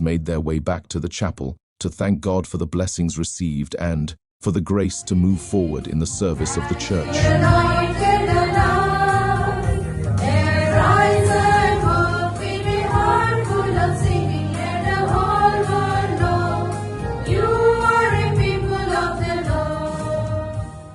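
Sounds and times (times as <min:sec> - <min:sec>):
low musical accompaniment: 0:04.7 - 0:20.9
choir singing held notes: 0:06.3 - 0:20.9.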